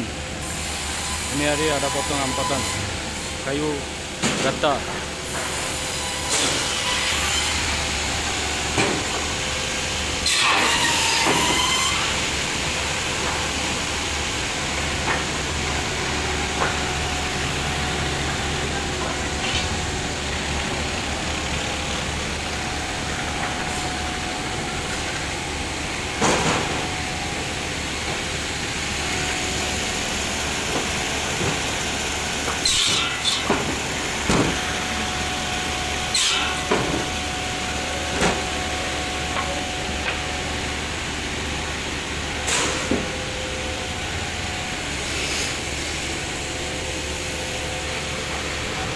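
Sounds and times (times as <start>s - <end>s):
sawmill machinery humming: 0.0s - 48.9s
sharp knocks of wood and metal: 32.6s - 34.6s.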